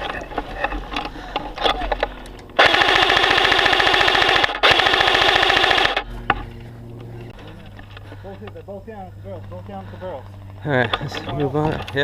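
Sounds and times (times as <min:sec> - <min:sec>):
airsoft gun full-auto bursts: 0:02.6 - 0:06.0.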